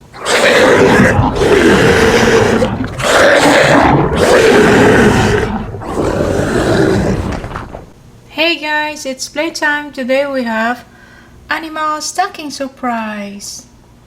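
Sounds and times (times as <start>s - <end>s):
dinosaur roars: 0.0s - 8.0s.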